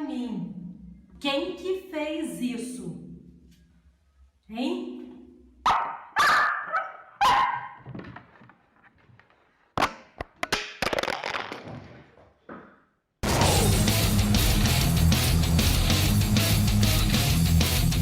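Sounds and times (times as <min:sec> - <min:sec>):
dog barking: 0:05.6 - 0:07.9
music: 0:13.2 - 0:18.0.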